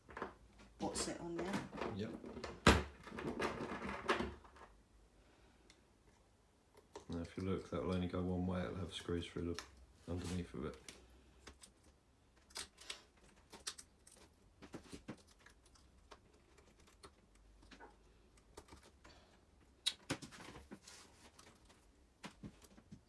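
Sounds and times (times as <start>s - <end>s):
small parts clicking and tapping: 10.8s - 20.3s.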